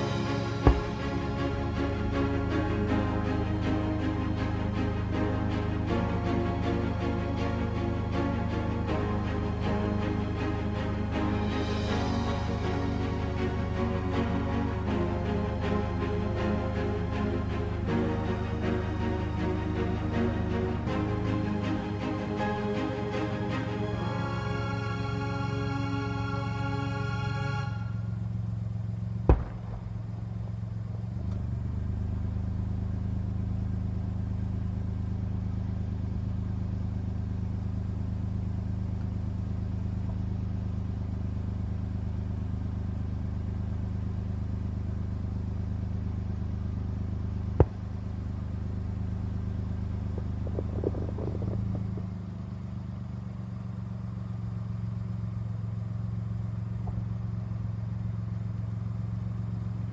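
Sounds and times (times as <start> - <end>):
low mechanical drone: 0.0 - 59.9
firework bangs: 0.5 - 1.3, 29.3 - 30.4
firework crackle: 29.3 - 30.4.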